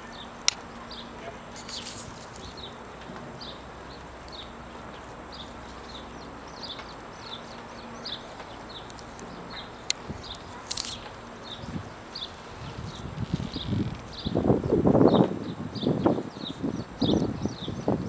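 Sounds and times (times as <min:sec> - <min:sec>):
brief rustle: 0:10.6 - 0:11.1.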